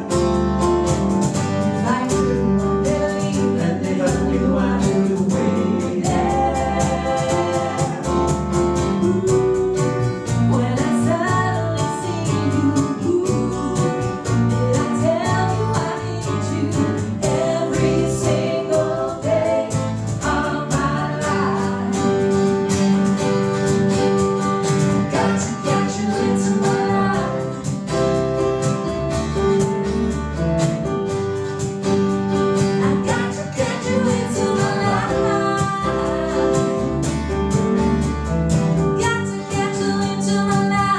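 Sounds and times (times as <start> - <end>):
strummed acoustic guitar: 0.0 - 40.9
people singing: 1.7 - 23.0, 24.7 - 28.0, 32.6 - 37.1, 39.0 - 40.9.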